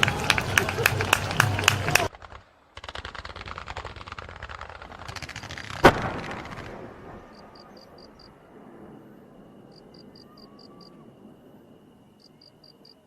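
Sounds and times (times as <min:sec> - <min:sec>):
firework crackling: 0:00.0 - 0:08.9
loud firework bang: 0:02.0 - 0:08.1
crickets chirping: 0:06.2 - 0:13.0.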